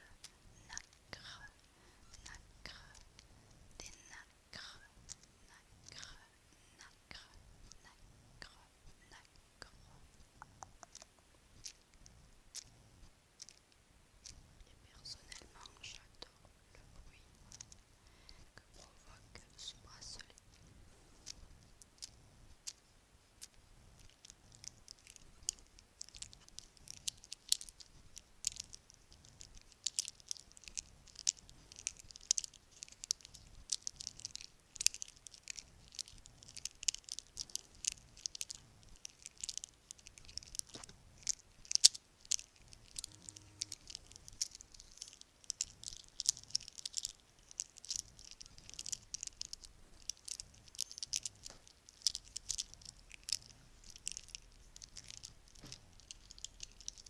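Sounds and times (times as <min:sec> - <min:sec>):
bracelets clinking and rattling: 0:24.0 - 0:57.0.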